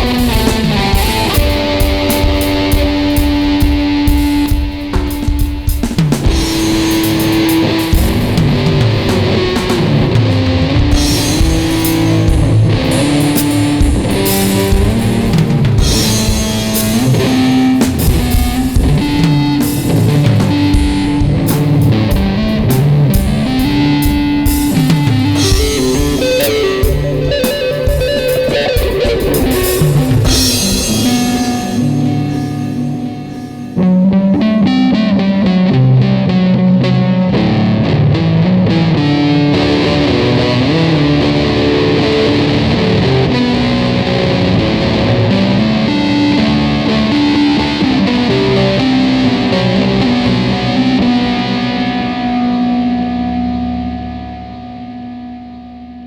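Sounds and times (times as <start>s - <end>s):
drum kit: 0.0s - 34.4s
electric guitar rock jam: 0.0s - 56.0s.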